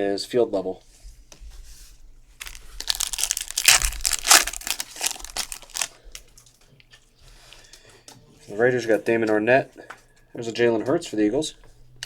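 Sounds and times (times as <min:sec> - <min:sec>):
foil wrapper crinkling and tearing: 0:02.4 - 0:06.4.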